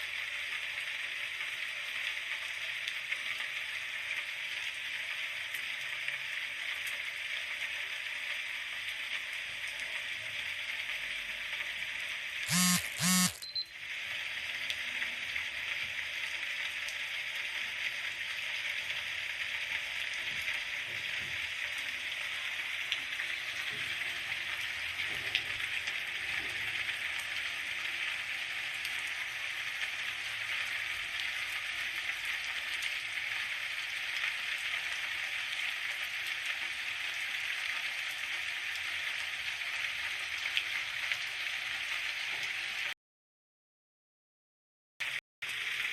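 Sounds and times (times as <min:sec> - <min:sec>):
short loud pitched sounds: 0:12.5 - 0:13.5.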